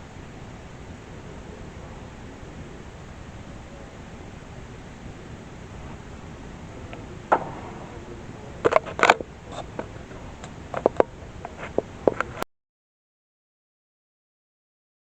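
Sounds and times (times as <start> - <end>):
steady hiss: 0.0 - 12.4
sharp clicks and knocks: 6.9 - 12.4.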